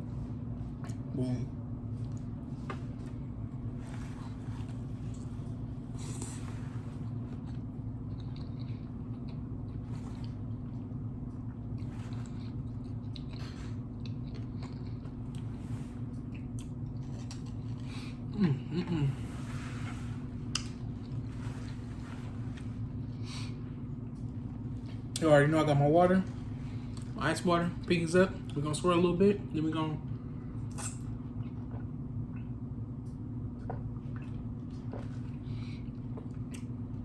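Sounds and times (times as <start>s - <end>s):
steady low hum: 0.0s - 37.0s
close chewing with mouth smacks: 7.0s - 18.0s.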